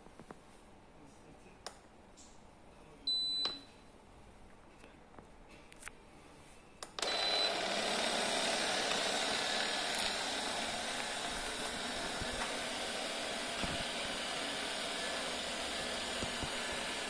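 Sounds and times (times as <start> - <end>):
robot vacuum motor running: 7.0 - 17.0.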